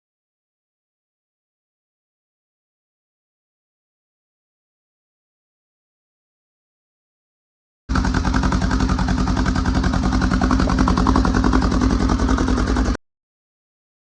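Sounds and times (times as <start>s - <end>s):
engine pulsing exhaust beat: 7.9s - 13.0s.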